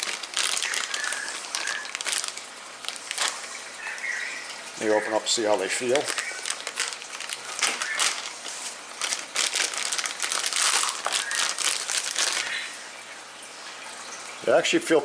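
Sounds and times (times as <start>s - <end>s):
plastic bag crinkling: 0.0s - 3.8s, 4.8s - 12.9s.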